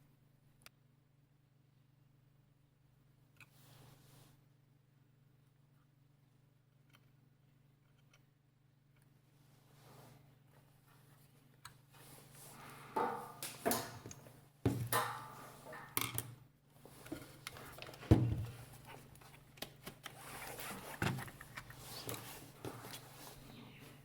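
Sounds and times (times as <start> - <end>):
tools clicking and knocking: 13.0 - 16.4.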